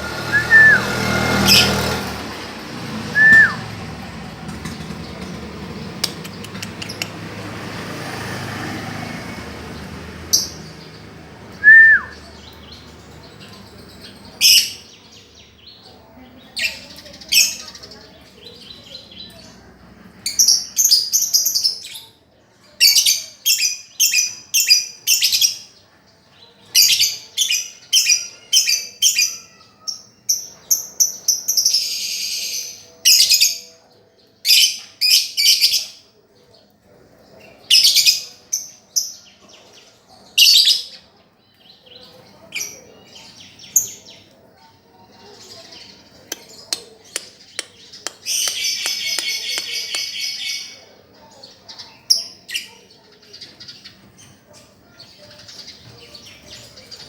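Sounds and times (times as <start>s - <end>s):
noisy bird call: 0.0s - 3.8s
bird chirping: 0.2s - 1.9s, 3.2s - 3.7s, 4.5s - 7.3s, 9.8s - 19.6s, 45.0s - 57.0s.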